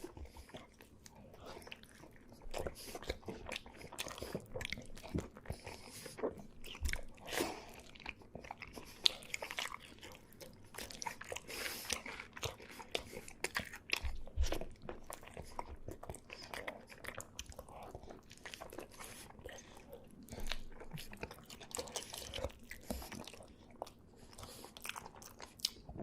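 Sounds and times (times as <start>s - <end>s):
person chewing with wet smacks: 0.0s - 26.0s.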